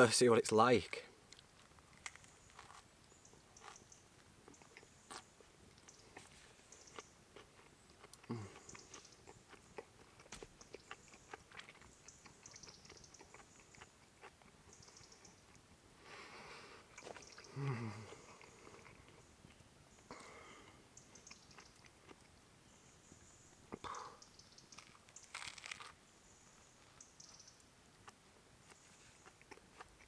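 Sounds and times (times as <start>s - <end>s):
faint biting and chewing: 1.3s - 15.7s, 16.8s - 22.4s, 24.6s - 26.0s, 26.6s - 30.0s.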